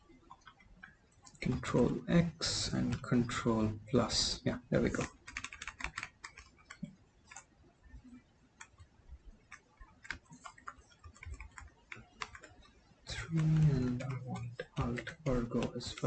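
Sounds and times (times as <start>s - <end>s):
faint keyboard keystrokes: 4.8s - 7.5s, 8.6s - 16.0s.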